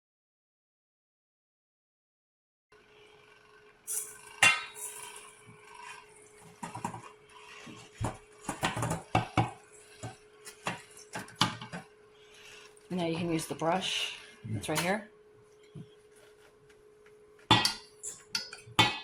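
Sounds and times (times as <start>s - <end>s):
metal kitchenware clanking: 3.9s - 11.8s, 17.5s - 19.0s.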